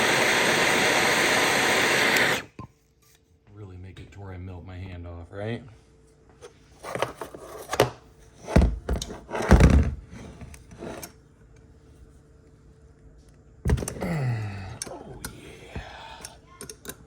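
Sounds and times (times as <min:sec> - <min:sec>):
short low vocal sound: 0:14.0 - 0:16.2.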